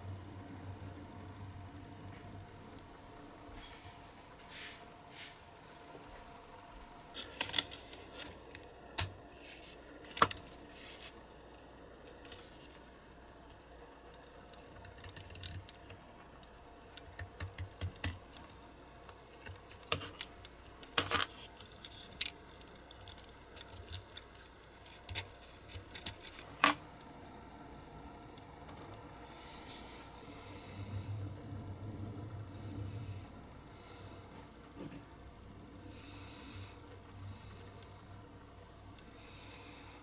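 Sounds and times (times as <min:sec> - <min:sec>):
small hard parts clicking: 0:13.5 - 0:26.8.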